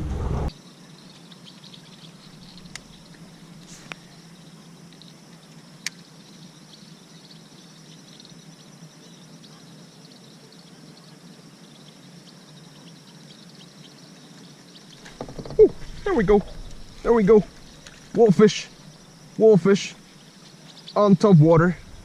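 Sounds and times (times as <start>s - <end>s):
steady low hum: 0.0s - 0.5s, 15.0s - 22.0s
birds chirping: 0.0s - 22.0s
insects chirping: 0.5s - 22.0s.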